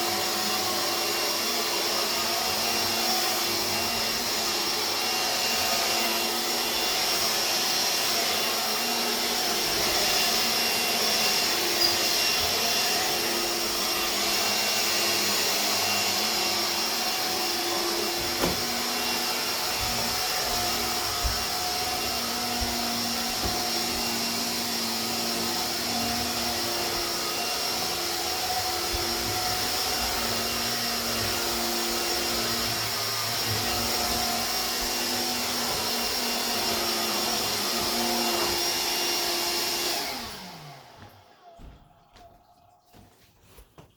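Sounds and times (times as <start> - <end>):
cordless vacuum cleaner running: 0.0 - 41.9.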